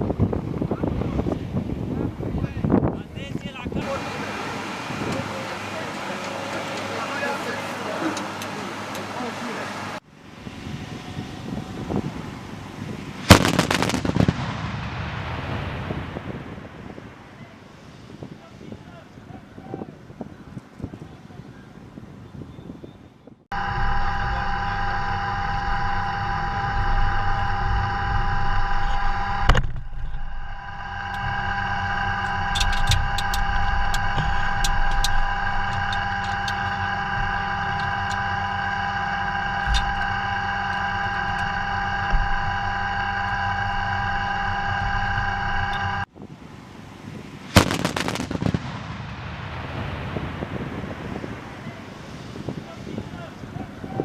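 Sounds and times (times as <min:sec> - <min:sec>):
machine hum and whine: 0:00.0 - 0:13.7, 0:23.5 - 0:46.1
cannon rapid fire: 0:13.2 - 0:16.7, 0:47.5 - 0:51.0.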